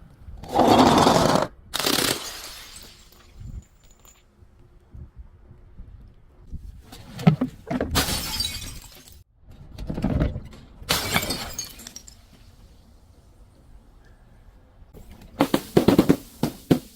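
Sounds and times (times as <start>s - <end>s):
glass bottles shattering: 1.9s - 4.2s, 7.9s - 9.2s, 10.9s - 12.6s.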